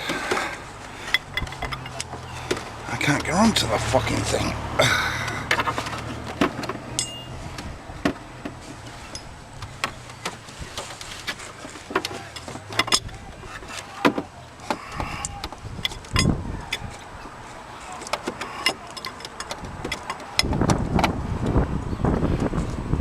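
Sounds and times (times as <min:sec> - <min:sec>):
spanner clicking on metal: 0:18.0 - 0:20.8.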